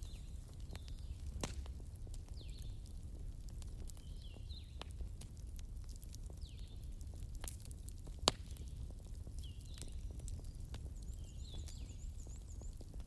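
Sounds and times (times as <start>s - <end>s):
wood fire crackling: 0.0s - 13.0s
sharp pop from fire: 1.4s - 1.7s, 8.2s - 8.6s.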